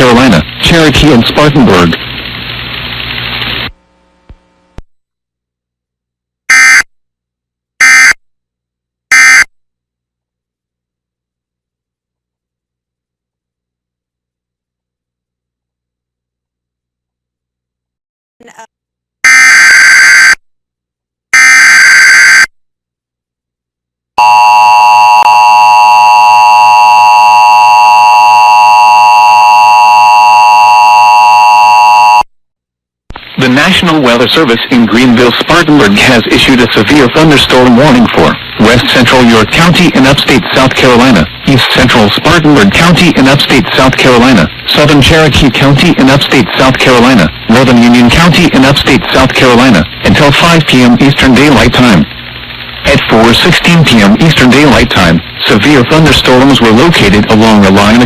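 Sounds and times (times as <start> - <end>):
broadcast hiss: 0.0 - 4.8, 33.1 - 58.0
loud two-tone alarm: 6.5 - 6.9, 7.8 - 8.2, 9.1 - 9.5, 19.2 - 20.4, 21.4 - 22.5, 24.2 - 32.2.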